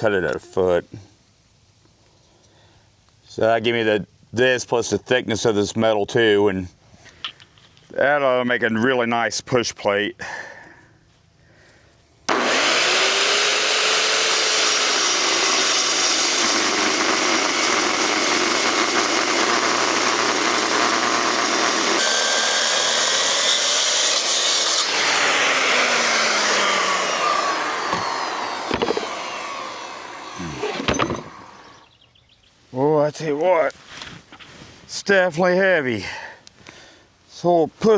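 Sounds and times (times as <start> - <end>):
metal-cutting power saw: 12.3 - 31.8
sharp metal clanks: 30.7 - 31.4.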